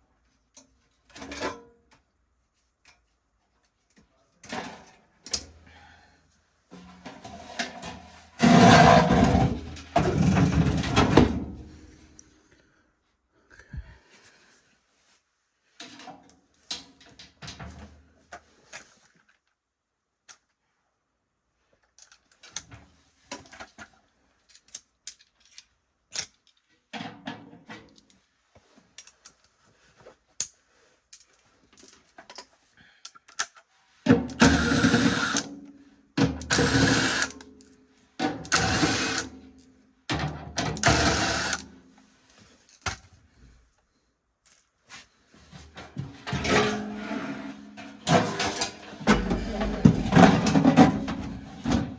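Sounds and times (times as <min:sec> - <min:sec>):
tools and sheet metal clattering: 0:06.8 - 0:11.7, 0:45.6 - 0:51.9.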